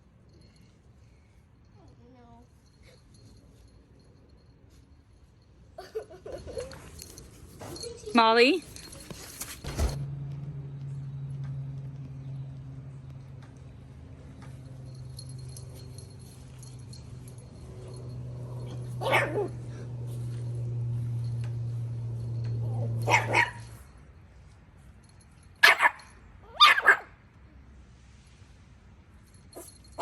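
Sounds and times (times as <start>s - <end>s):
puppy yipping: 19.0s - 19.6s, 23.0s - 23.7s, 25.6s - 27.1s.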